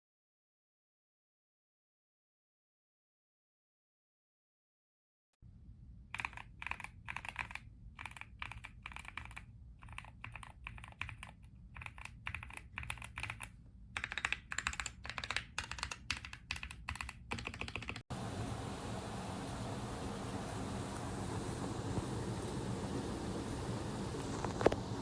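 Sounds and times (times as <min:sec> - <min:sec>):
mechanical keyboard typing: 0:06.1 - 0:18.1.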